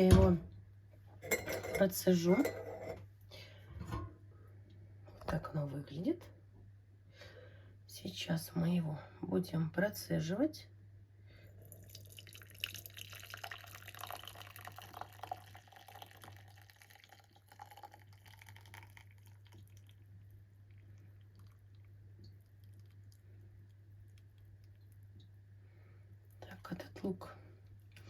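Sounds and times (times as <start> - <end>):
milk trickling through a strainer: 11.6 - 25.6.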